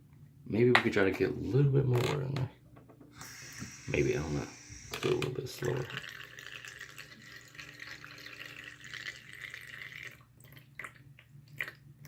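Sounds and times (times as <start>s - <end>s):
water dripping: 3.2s - 11.8s
water trickling into plastic bottle: 3.2s - 11.8s.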